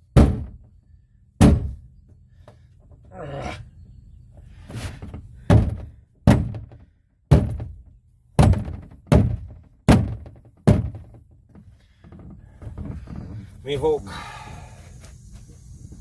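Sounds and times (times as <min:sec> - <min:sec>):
pipe being struck heavily: 0:00.2 - 0:00.6.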